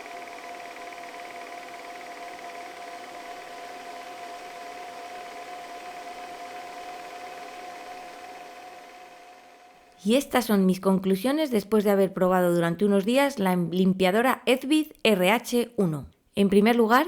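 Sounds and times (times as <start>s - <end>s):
floor cleaner motor whine: 0.0s - 10.0s.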